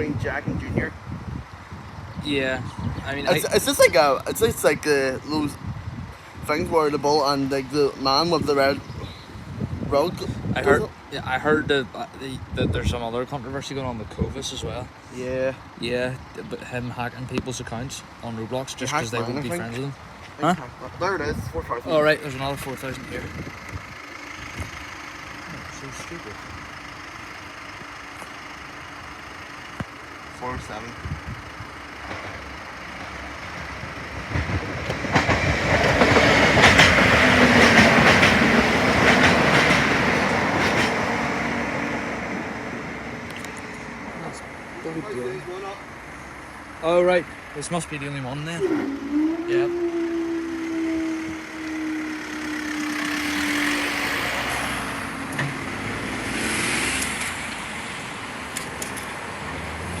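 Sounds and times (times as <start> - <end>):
diesel train passing: 0.0 - 60.0
train wheels clacking over track: 32.0 - 42.0.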